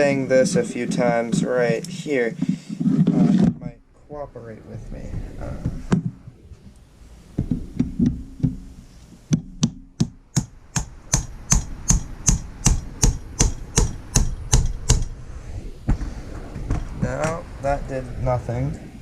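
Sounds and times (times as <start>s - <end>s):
mallet banging on pump housing: 9.3s - 15.1s.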